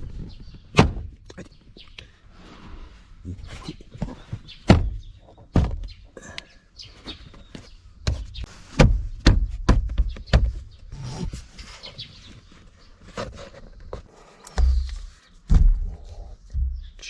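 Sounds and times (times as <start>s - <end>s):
tools knocking and thumping: 4.0s - 6.0s.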